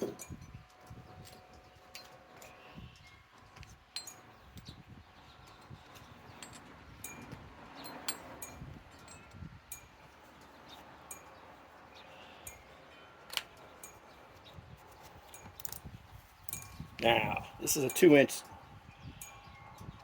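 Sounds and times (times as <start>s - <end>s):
ringing chime-like tones: 16.5s - 19.9s.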